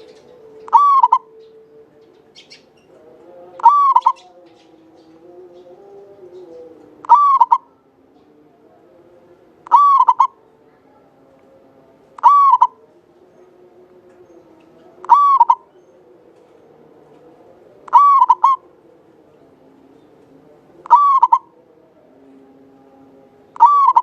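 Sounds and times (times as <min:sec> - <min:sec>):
dove cooing: 0:00.0 - 0:04.4, 0:05.5 - 0:07.8, 0:09.6 - 0:11.0, 0:12.2 - 0:13.5, 0:14.8 - 0:16.4, 0:17.8 - 0:19.0, 0:20.7 - 0:21.6, 0:23.6 - 0:24.0.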